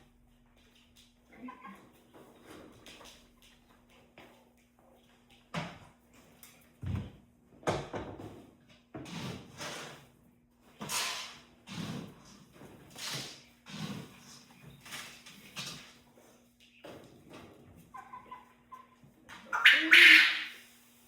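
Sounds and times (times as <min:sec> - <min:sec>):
knocks scrapes and rustles: 0:08.0 - 0:18.0.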